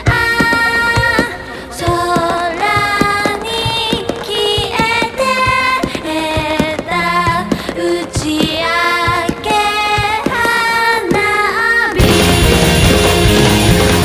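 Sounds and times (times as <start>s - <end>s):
high sung melody: 0.0s - 14.0s
short percussive hits: 12.0s - 14.0s.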